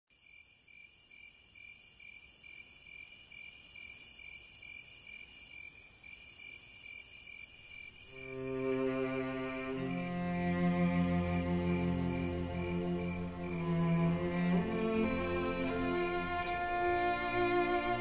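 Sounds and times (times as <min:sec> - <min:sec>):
cricket chirping: 0:00.1 - 0:18.0
high insect hiss: 0:00.2 - 0:18.0
low bowed-string music: 0:08.1 - 0:18.0.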